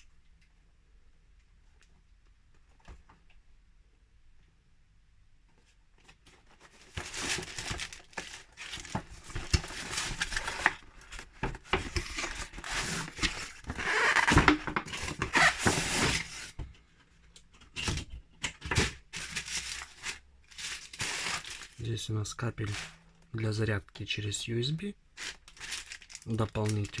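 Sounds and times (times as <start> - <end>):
packaging rustling and tearing: 6.4 - 16.6, 17.8 - 21.9, 22.5 - 23.2, 25.2 - 27.0.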